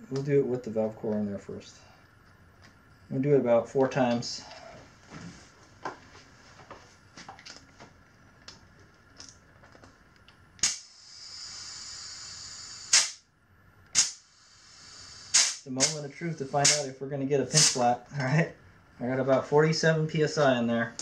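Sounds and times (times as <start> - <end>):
valve and air chuck clicks: 10.2 - 13.2, 13.8 - 16.0
sharp pop: 10.6 - 10.9, 12.9 - 13.2, 13.9 - 14.2
compressed air hissing into tire: 10.6 - 13.3, 13.9 - 16.9, 17.5 - 17.9.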